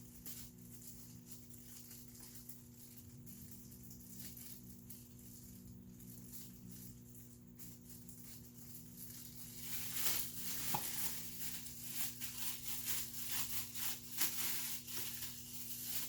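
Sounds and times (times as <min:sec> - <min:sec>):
parts rustling and scraping: 0:00.0 - 0:16.0.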